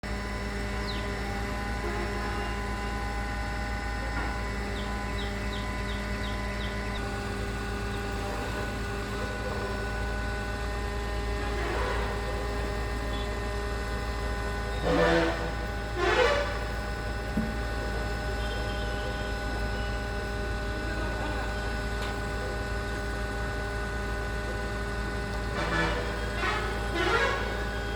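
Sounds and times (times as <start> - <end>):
pump engine low rumble: 0.1 - 27.9.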